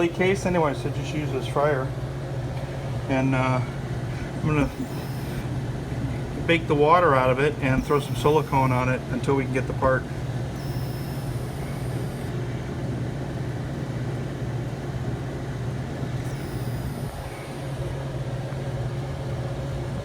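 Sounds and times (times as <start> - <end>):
hot-air dryer blowing with low hum: 0.0 - 20.0
faint high whine: 4.4 - 6.2, 7.3 - 12.4, 16.2 - 18.5.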